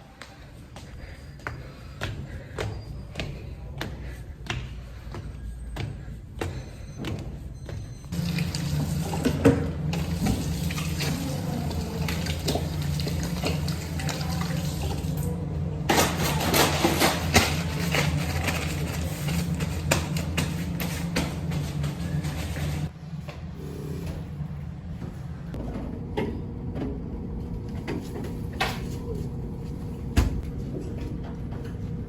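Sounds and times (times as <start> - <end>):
water running: 8.2 - 15.3.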